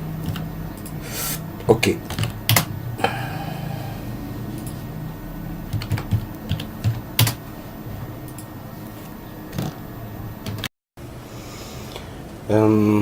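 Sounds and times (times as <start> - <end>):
keyboard keystrokes: 5.7 - 7.4.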